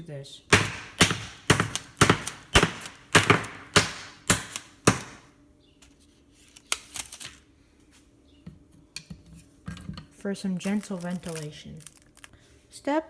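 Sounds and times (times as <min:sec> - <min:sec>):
knife stabbing through plastic film: 0:00.5 - 0:05.2.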